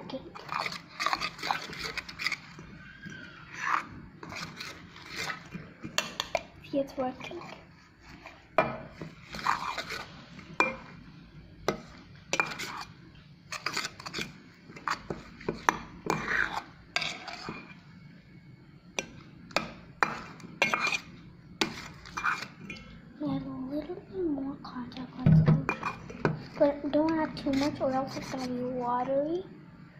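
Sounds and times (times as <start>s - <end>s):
spoon knocking and scraping bowl: 0.4s - 6.5s, 8.2s - 11.0s, 11.6s - 17.8s, 19.0s - 23.0s, 25.3s - 28.6s.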